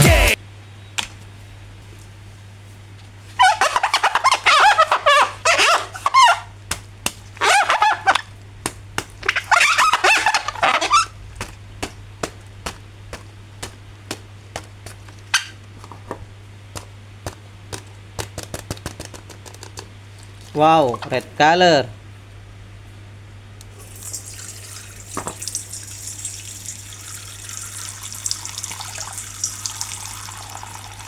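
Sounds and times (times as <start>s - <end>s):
plastic packaging crinkling: 3.4s - 16.2s
sharp clicks and taps: 16.8s - 19.9s.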